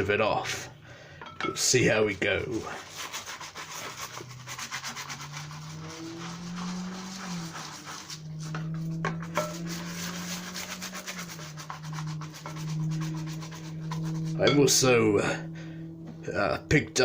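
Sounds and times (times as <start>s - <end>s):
brush scrubbing wet plastic: 1.6s - 15.1s.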